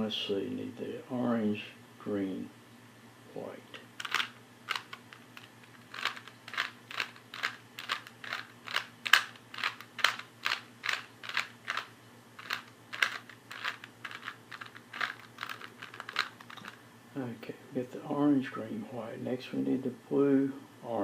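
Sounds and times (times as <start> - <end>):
puzzle cube clacking turns: 4.0 - 16.8.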